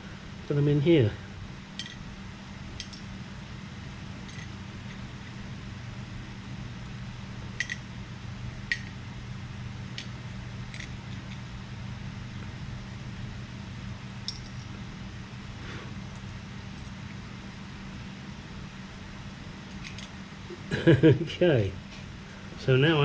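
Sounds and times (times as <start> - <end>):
steady low hum: 0.0 - 23.0
small brass pieces clinking: 1.8 - 2.0, 2.8 - 3.1, 4.2 - 5.0, 7.6 - 7.9, 8.7 - 9.0, 14.2 - 14.7.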